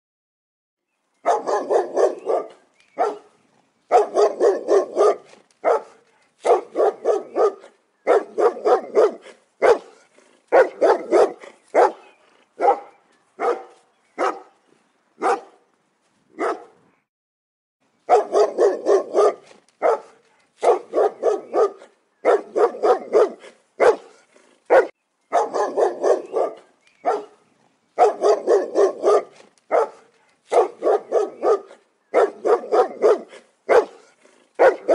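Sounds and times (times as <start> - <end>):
dog barking: 1.2 - 14.6, 15.2 - 15.6, 16.4 - 16.8, 18.1 - 27.4, 28.0 - 34.9.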